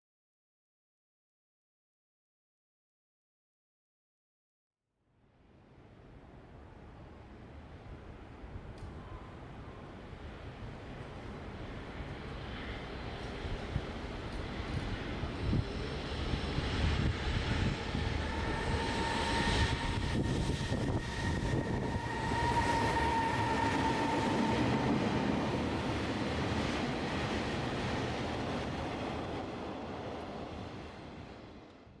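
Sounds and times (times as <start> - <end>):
freight train rumbling on rails: 5.8 - 31.9
high steady wheel squeal: 15.4 - 25.9.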